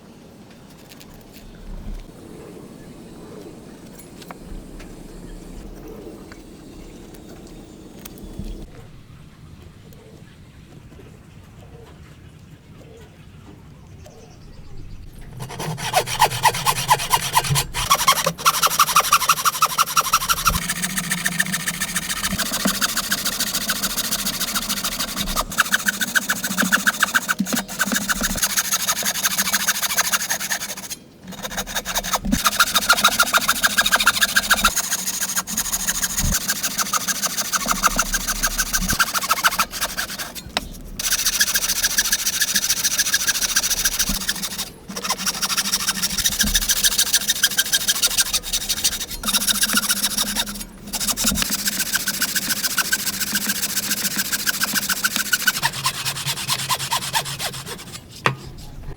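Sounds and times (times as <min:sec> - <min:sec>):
hand tool rasping on wood: 0:15.2 - 0:58.9.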